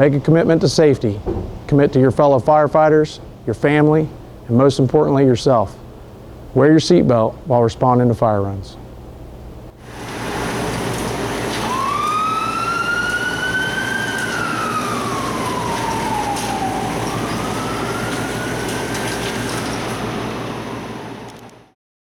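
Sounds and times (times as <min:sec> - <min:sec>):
steady background noise: 0:00.0 - 0:21.8
fire engine siren wailing: 0:09.9 - 0:21.8.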